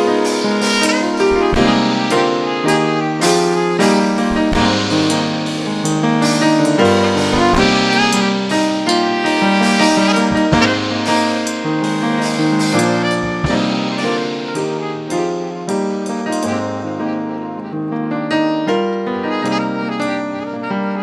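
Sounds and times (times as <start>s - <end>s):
piano: 0.0s - 21.0s
saxophone: 0.0s - 21.0s.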